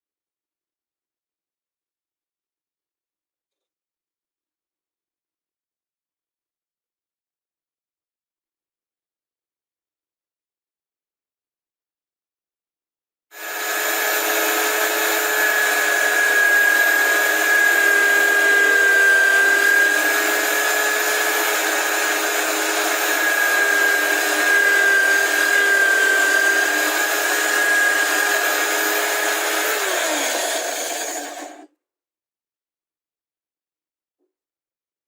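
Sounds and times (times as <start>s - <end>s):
power tool motor whining: 13.4s - 31.7s.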